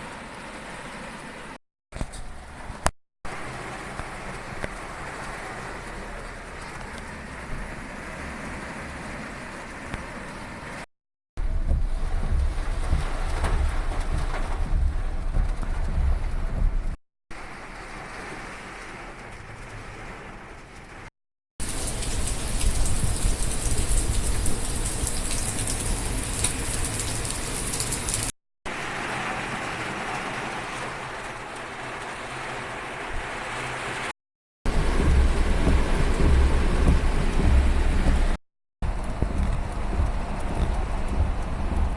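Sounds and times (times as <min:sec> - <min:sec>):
heavy rain: 0:00.0 - 0:34.1, 0:34.7 - 0:41.9
wind noise on microphone: 0:11.4 - 0:17.0, 0:21.7 - 0:27.1, 0:34.7 - 0:41.9.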